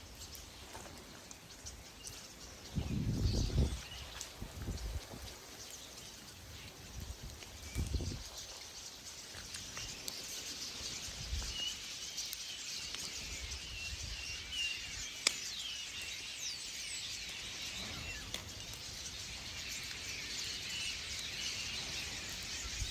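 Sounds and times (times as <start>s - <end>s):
flock of birds chirping: 0.0s - 22.9s.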